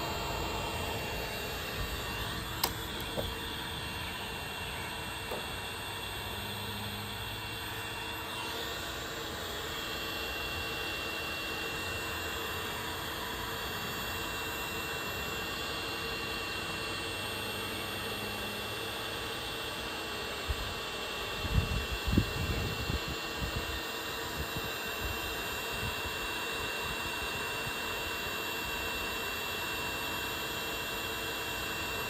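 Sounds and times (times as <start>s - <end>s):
heat gun blowing air: 0.0s - 11.3s.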